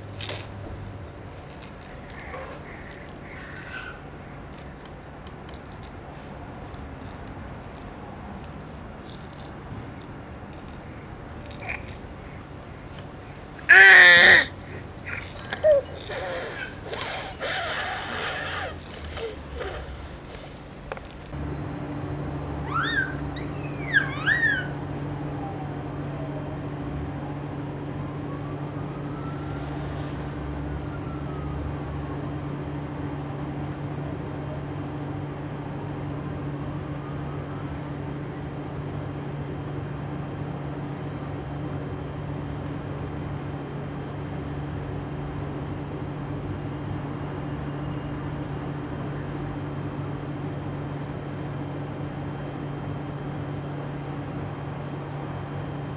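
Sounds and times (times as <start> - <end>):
low mechanical hum: 0.0 - 55.9
baby squealing: 2.0 - 4.0, 13.7 - 19.8, 22.7 - 24.8.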